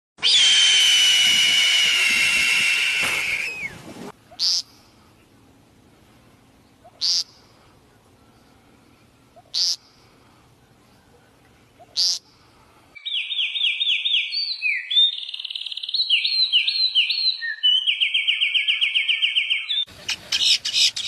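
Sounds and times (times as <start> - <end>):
bird buzzy call: 0.3 - 5.0, 6.8 - 7.6, 9.3 - 10.2, 10.8 - 12.4.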